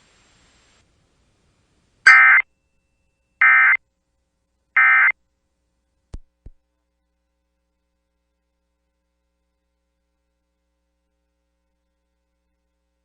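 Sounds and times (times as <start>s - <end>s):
buzzy digital data bursts: 2.1s - 2.4s, 3.4s - 3.8s, 4.8s - 5.1s.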